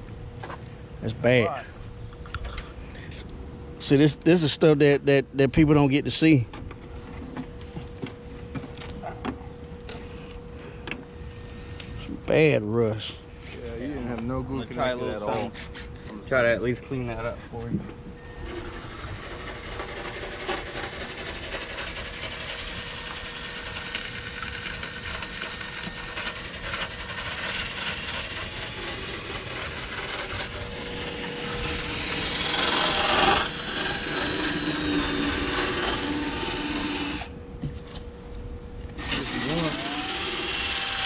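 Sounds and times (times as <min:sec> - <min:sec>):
rasping and scraping rust: 0:18.3 - 0:37.3.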